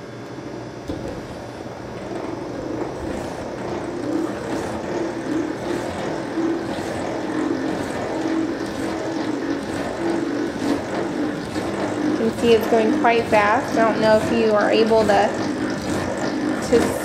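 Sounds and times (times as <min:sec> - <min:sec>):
honey extractor spinning: 0:00.9 - 0:17.0.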